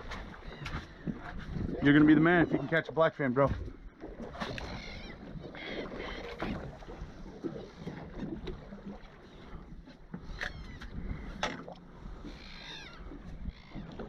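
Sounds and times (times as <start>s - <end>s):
wind on microphone: 0.0s - 2.6s
water against boat hull: 0.0s - 14.0s.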